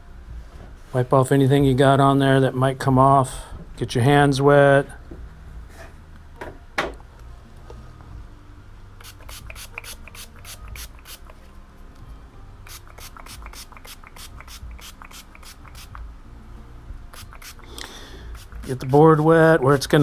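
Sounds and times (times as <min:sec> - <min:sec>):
spray bottle spritzes: 0:09.0 - 0:11.4, 0:12.6 - 0:16.0, 0:17.1 - 0:19.3.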